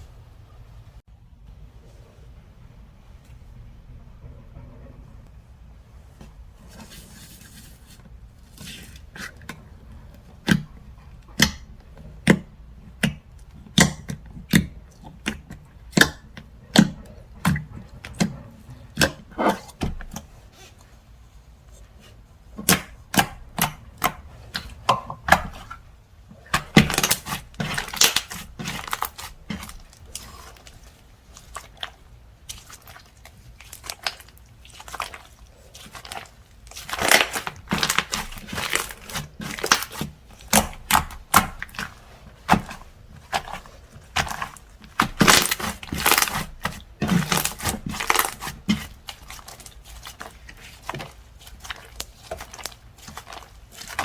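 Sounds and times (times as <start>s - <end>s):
slime popping and crackling: 26.4s - 54.0s.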